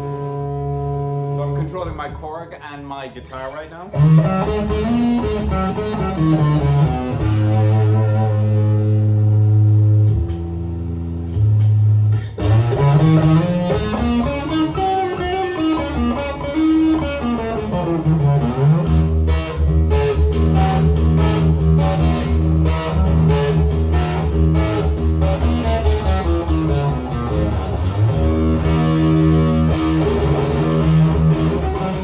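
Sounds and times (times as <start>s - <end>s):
electric guitar: 0.0s - 1.7s, 3.9s - 32.0s.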